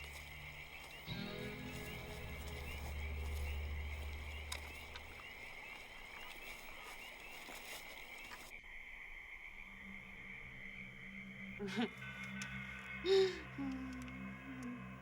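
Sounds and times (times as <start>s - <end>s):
low drone: 0.0s - 6.4s, 9.6s - 15.0s
night insects chirping: 0.0s - 15.0s.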